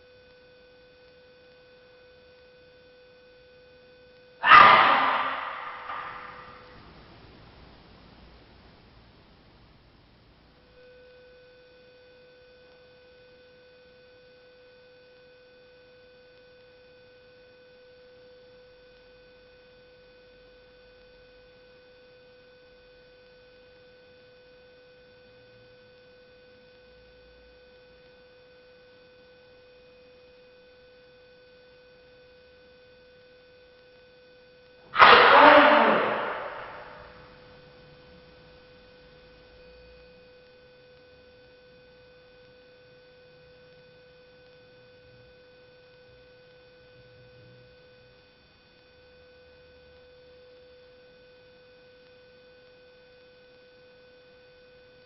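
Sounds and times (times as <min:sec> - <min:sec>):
sudden loud burst: 0:04.4 - 0:06.7, 0:35.0 - 0:37.2.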